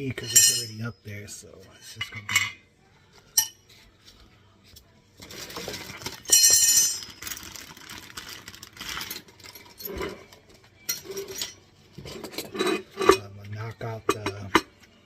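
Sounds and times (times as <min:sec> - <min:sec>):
metal tools clinking and rattling: 0:00.1 - 0:00.9, 0:01.8 - 0:02.6, 0:05.2 - 0:07.7, 0:08.8 - 0:14.7.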